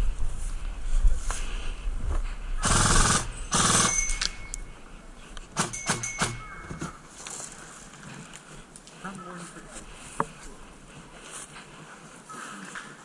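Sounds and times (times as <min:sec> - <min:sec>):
airsoft gun bursts: 0:02.6 - 0:04.6, 0:05.5 - 0:06.9.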